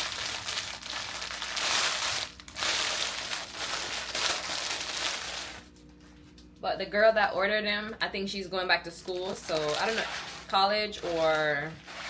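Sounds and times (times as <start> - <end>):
plastic packaging crinkling: 0.0 - 6.4, 9.0 - 12.0.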